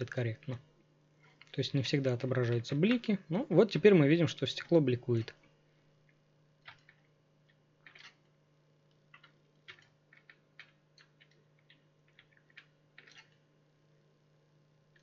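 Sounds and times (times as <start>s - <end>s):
low steady hum: 0.0s - 15.0s
computer mouse and keyboard clicks: 6.6s - 8.3s, 9.0s - 13.4s.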